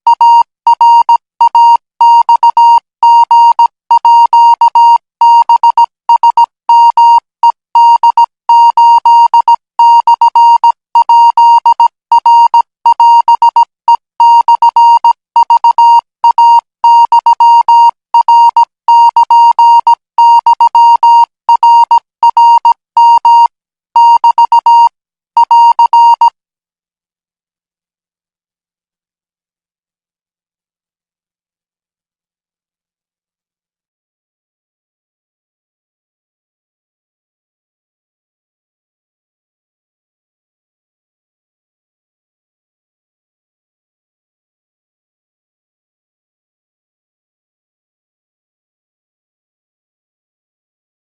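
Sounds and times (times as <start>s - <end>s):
morse code tone: 0.1s - 26.3s.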